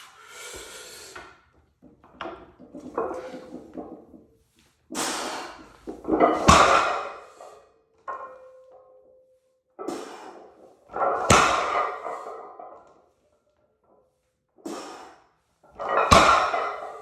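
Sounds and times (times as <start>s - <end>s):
barbell plates clanking: 2.0s - 4.2s, 5.0s - 7.5s, 10.9s - 12.8s, 15.7s - 17.0s
barbell thudding on floor: 5.9s - 7.2s, 11.0s - 12.4s, 15.8s - 17.0s.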